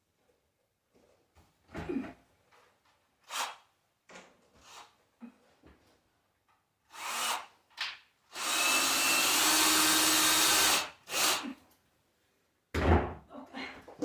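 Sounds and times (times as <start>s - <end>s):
power drill running: 6.9s - 7.5s, 8.3s - 11.5s
loud thump: 12.7s - 13.2s.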